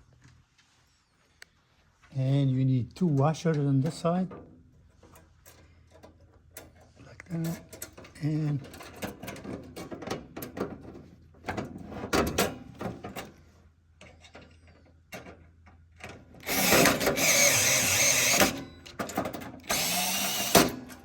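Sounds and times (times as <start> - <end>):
power drill driving screw: 16.4 - 18.8, 19.6 - 21.0.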